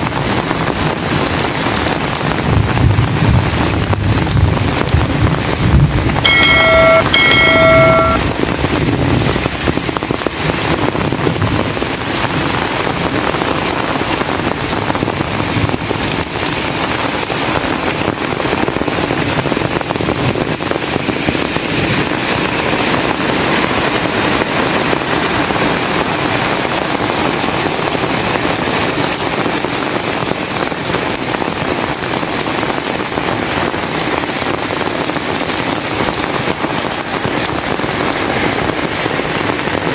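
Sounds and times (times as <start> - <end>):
heavy rain pouring: 0.0 - 39.9
short pitched beeps: 6.3 - 8.3.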